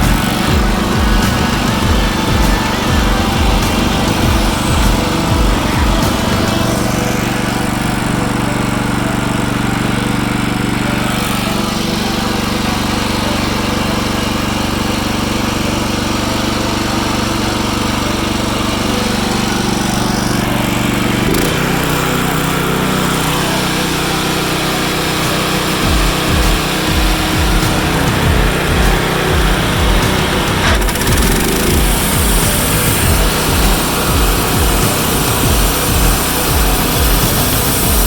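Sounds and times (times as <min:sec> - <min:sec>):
sawmill engine running: 0:00.0 - 0:38.0.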